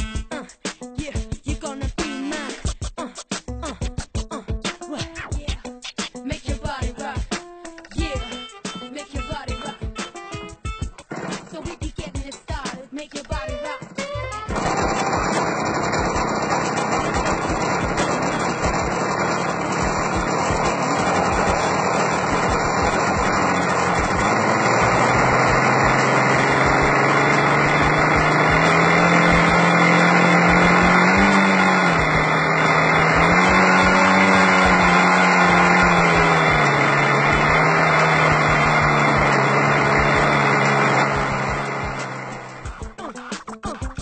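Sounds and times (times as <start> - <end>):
model plane engine running: 11.1 - 11.5, 14.5 - 42.8.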